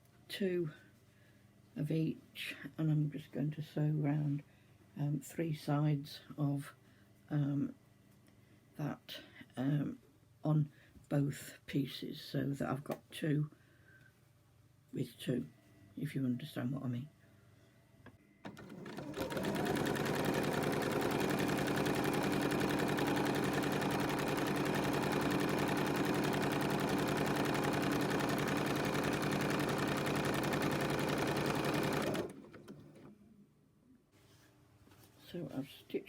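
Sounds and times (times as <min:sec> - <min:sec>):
sewing machine stitching: 0:18.4 - 0:33.1.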